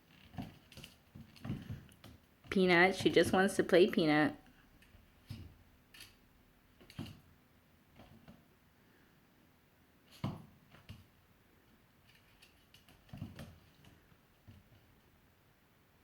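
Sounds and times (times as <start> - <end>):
animals thumping and scuffing: 0.4 - 3.9.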